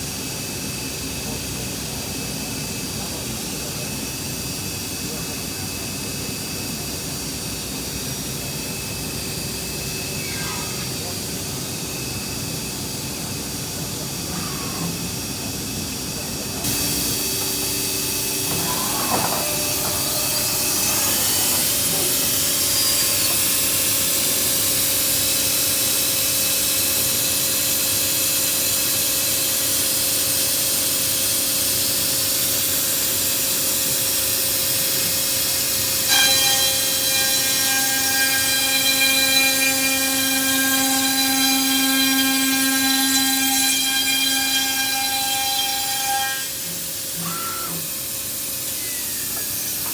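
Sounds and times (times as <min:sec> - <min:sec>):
wood router whining: 0:09.2 - 0:12.4, 0:16.6 - 0:25.1, 0:36.0 - 0:49.9.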